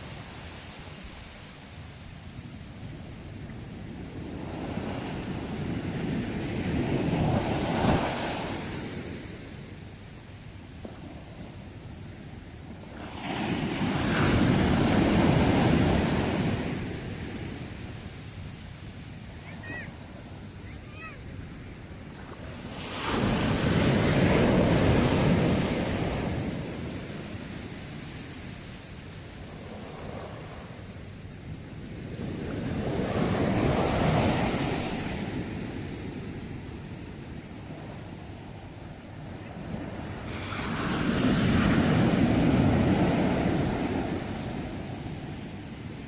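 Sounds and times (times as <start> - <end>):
ocean waves breaking: 2.9 - 9.8, 10.8 - 31.3, 32.0 - 36.8, 37.4 - 46.0
ocean wave breaking: 22.1 - 27.5, 39.0 - 45.3.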